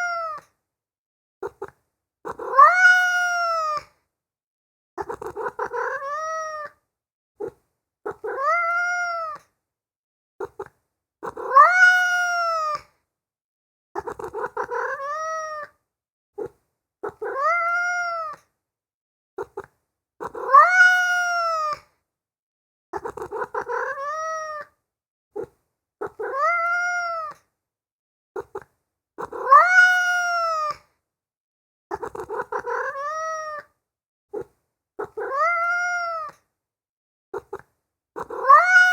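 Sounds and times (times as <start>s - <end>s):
cat meowing: 0.0s - 0.5s, 2.3s - 3.9s, 5.0s - 6.8s, 8.1s - 9.5s, 10.4s - 12.9s, 14.0s - 15.8s, 16.4s - 18.5s, 19.4s - 21.8s, 23.0s - 24.8s, 25.4s - 27.5s, 28.4s - 30.8s, 31.9s - 33.8s, 34.4s - 36.4s, 37.4s - 38.9s.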